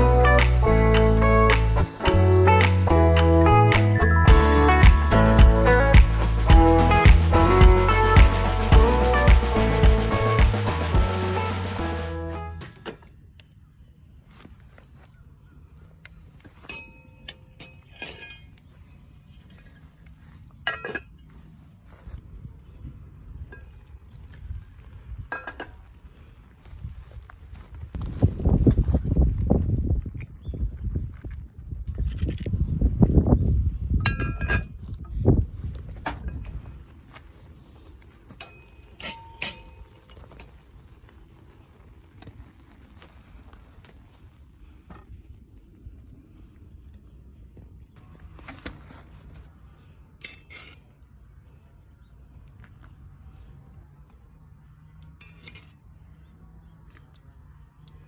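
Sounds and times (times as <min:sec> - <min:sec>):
camp cookware clinking: 0:16.4 - 0:21.5, 0:25.2 - 0:26.1, 0:34.0 - 0:35.0, 0:38.3 - 0:41.2, 0:50.1 - 0:51.0, 0:55.0 - 0:55.9
cookware and utensils clinking: 0:20.6 - 0:21.2, 0:38.4 - 0:40.1.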